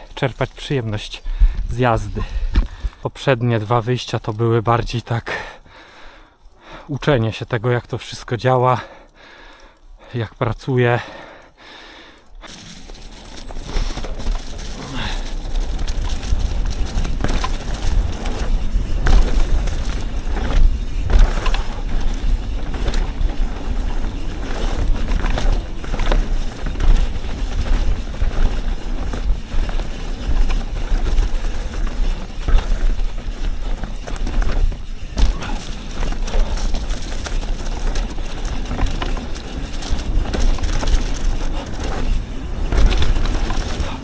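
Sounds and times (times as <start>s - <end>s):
bike knocking and rattling: 0.0s - 5.6s, 12.1s - 44.0s
bike tyres rolling on dirt: 0.0s - 44.0s
wind rumble on microphone: 13.6s - 44.0s.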